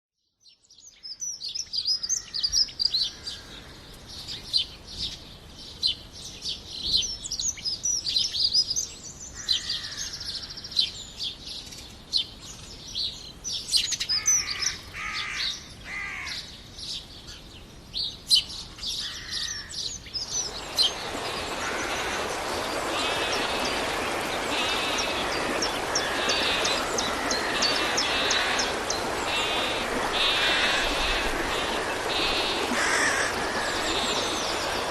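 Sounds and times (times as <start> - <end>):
steady rushing noise: 20.2 - 34.9.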